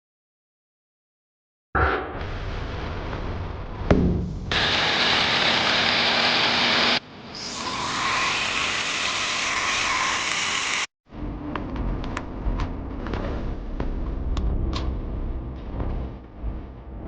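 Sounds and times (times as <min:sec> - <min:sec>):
loud hissing noise: 0:04.4 - 0:10.9.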